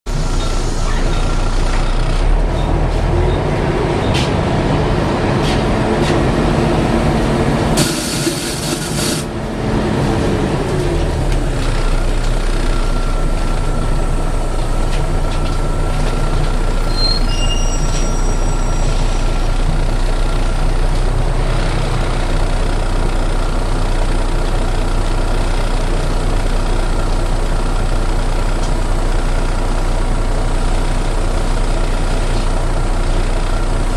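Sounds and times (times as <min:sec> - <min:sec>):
bus engine running: 0:00.1 - 0:33.9
air hiss: 0:07.8 - 0:09.3.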